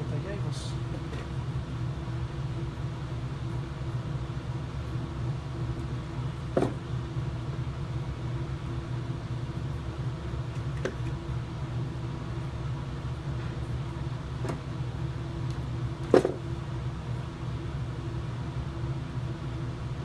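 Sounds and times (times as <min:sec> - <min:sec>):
low machine hum: 0:00.0 - 0:20.0.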